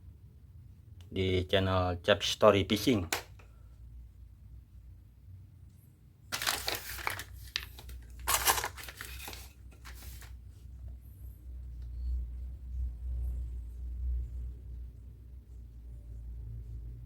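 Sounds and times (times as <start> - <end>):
crinkling rustling handling noise: 6.3 - 10.9.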